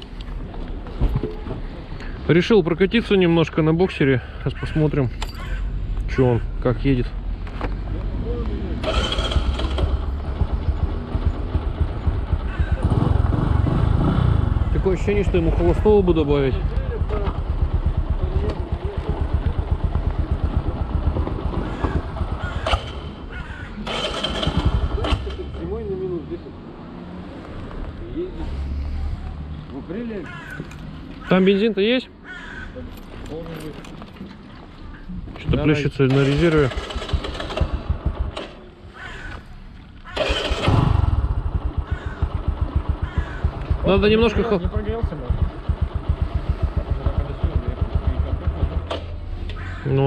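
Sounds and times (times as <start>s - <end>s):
motorcycle engine idling: 7.9s - 25.8s, 36.3s - 49.8s.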